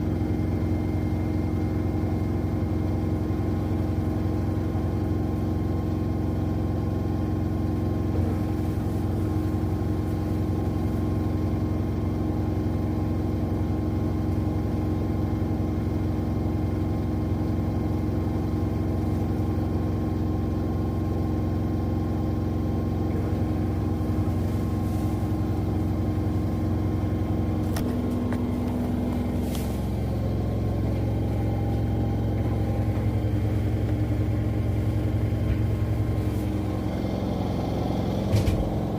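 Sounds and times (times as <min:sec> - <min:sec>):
washing machines spinning: 0:00.0 - 0:38.9.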